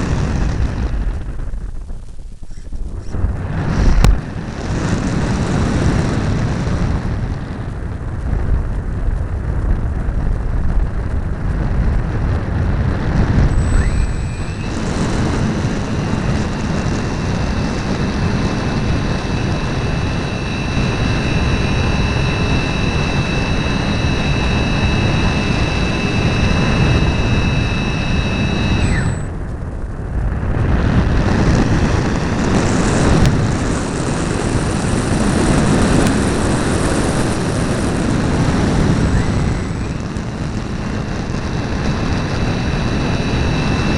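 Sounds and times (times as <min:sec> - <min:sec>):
model plane motor whine: 0:00.0 - 0:43.9
wind rushing over camera: 0:00.0 - 0:43.9.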